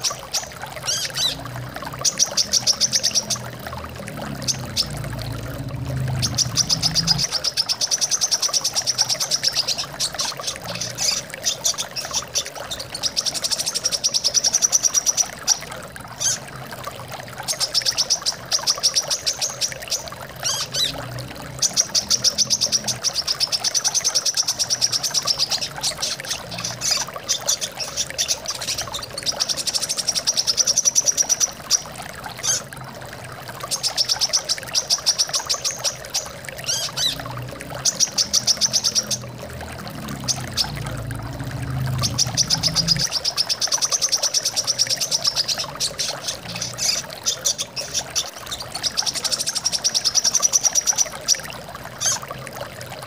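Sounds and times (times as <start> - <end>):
flowing water: 0.0 - 53.0.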